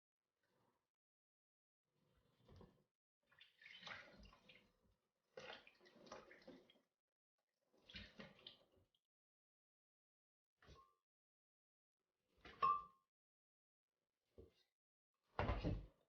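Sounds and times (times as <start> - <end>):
water splashing in a bowl: 3.3 - 4.7, 5.3 - 6.9.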